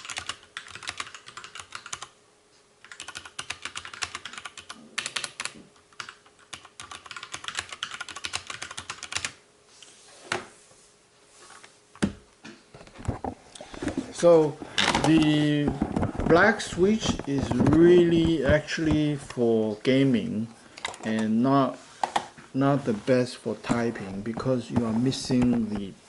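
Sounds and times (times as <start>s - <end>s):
fast mechanical keyboard typing: 0.0s - 2.1s, 2.8s - 9.4s, 15.0s - 19.2s.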